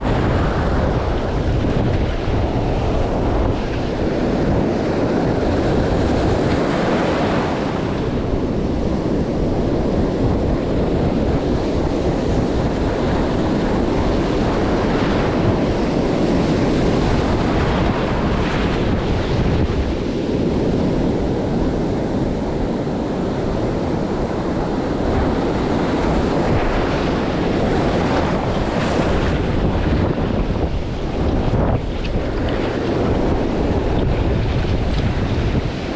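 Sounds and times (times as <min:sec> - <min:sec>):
wind buffeting microphone: 0:00.0 - 0:35.9
surf breaking on rocks: 0:12.5 - 0:35.9.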